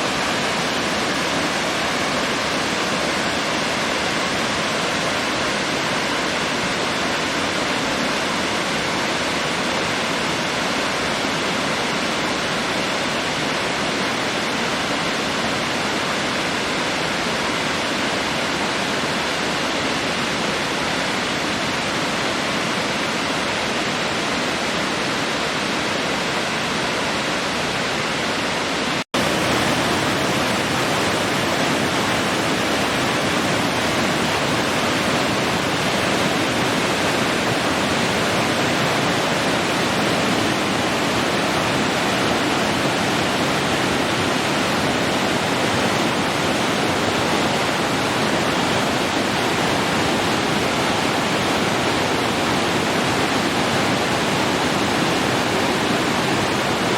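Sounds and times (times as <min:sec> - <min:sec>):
waterfall rushing: 0:00.0 - 0:56.9.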